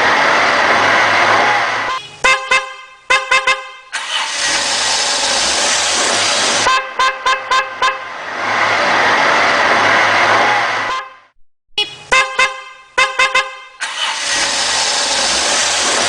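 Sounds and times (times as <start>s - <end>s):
car horn honking: 1.9s - 4.7s, 6.6s - 8.1s, 10.9s - 14.7s.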